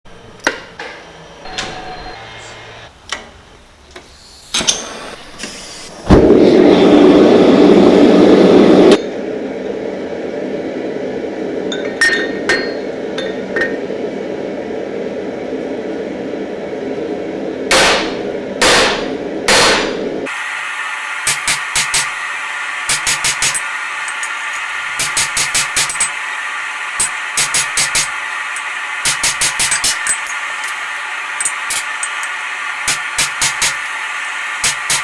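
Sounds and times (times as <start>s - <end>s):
hammer striking steel on anvil: 11.8s - 13.8s, 17.7s - 20.1s, 27.0s - 30.8s.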